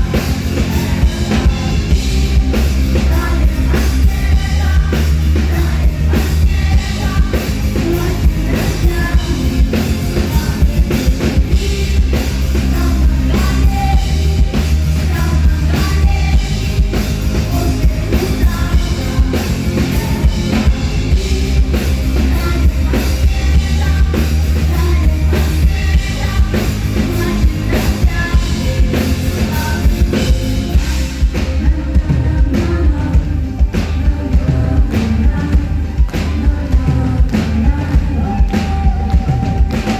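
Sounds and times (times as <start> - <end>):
person singing: 0.0 - 39.9
rock band playing: 0.0 - 39.9.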